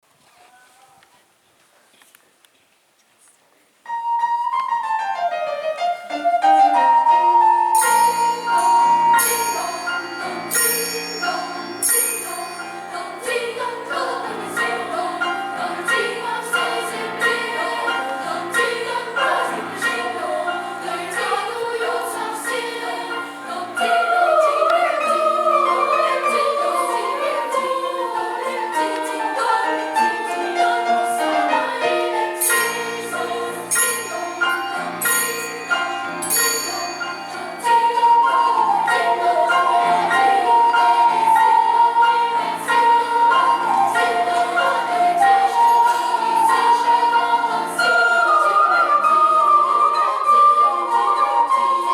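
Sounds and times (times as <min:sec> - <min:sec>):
instrumental accompaniment: 0:03.9 - 0:51.9
choir singing a christmas song: 0:05.3 - 0:51.9.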